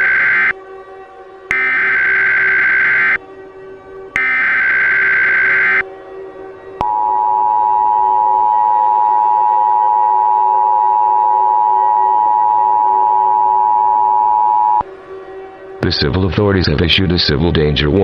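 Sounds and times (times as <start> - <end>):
two-tone alert signal: 1.5 - 3.2, 4.2 - 5.8.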